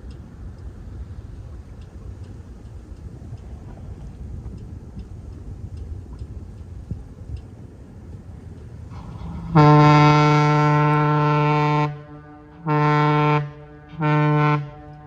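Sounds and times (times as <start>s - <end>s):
steam whistle blasts: 9.0s - 15.0s.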